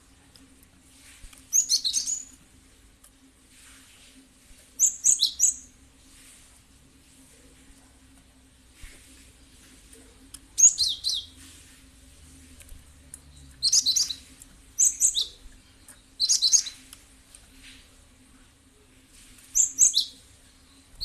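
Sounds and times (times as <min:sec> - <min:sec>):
bird chirping: 0:01.5 - 0:02.4, 0:04.8 - 0:05.7, 0:10.6 - 0:11.4, 0:13.2 - 0:16.9, 0:19.5 - 0:21.0.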